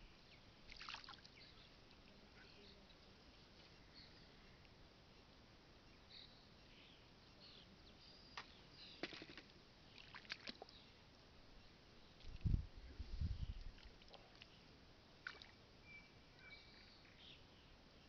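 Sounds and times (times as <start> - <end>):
faint bird chirps: 15.8 - 18.0.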